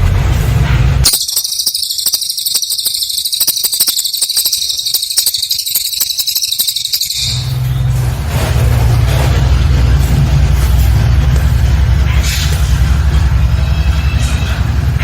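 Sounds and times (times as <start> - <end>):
songbird buzzy trill: 1.0 - 8.2.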